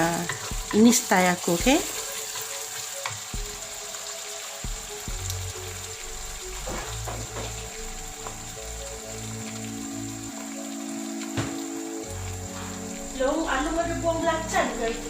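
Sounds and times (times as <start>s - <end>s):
paste sizzling in hot oil: 0.0s - 15.0s
soft background music: 0.0s - 15.0s.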